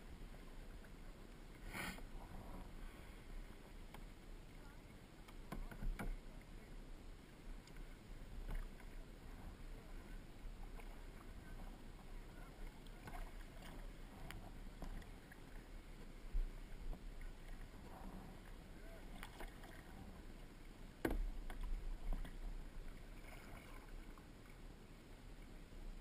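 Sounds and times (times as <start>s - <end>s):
paddle splashing in water: 7.6s - 24.5s.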